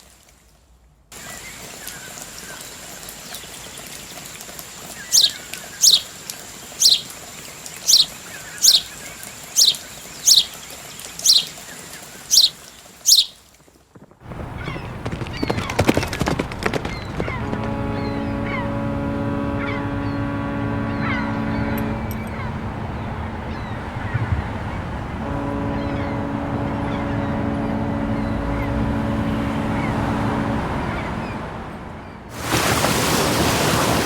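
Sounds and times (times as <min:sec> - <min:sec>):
bird chirping: 0:04.9 - 0:13.4, 0:14.4 - 0:31.5
steady high whine: 0:16.9 - 0:31.9.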